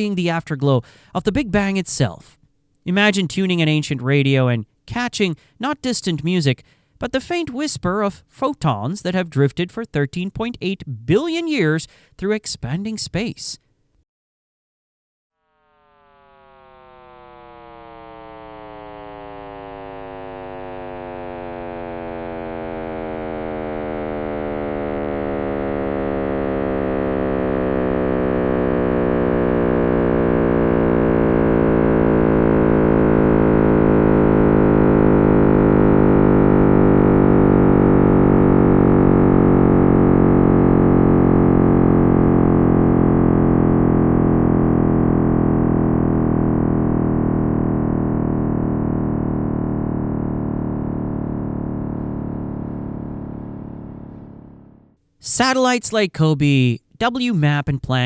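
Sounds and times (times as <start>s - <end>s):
low hum: 15.5s - 55.0s
synthetic drone of stacked tones: 16.0s - 58.0s.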